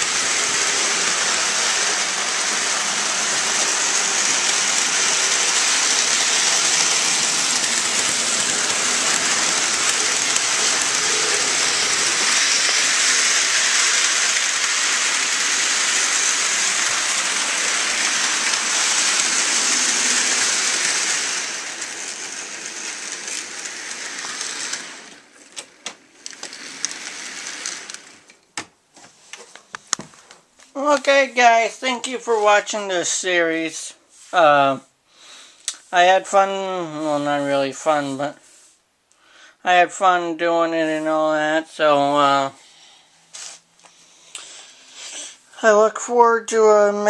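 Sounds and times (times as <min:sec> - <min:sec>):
model train wheels rolling on rails: 0:00.0 - 0:28.6, 0:30.8 - 0:33.9.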